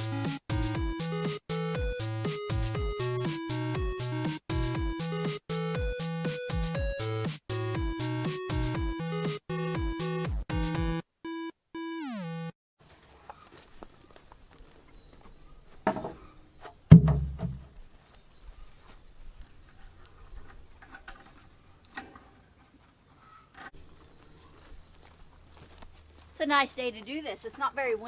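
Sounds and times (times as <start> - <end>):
electronic jingle: 0.0 - 12.6
heavy thumps: 16.9 - 17.7
knocks: 16.9 - 17.7.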